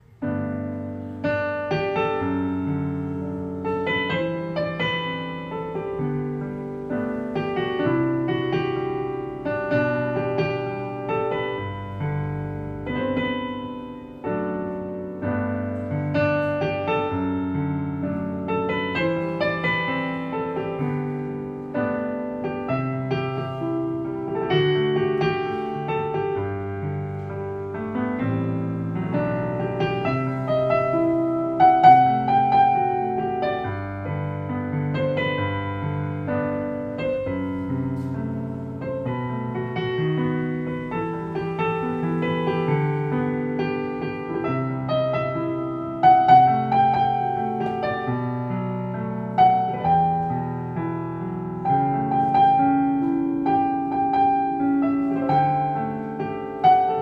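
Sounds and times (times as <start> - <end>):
slow piano ballad: 0.0 - 57.0.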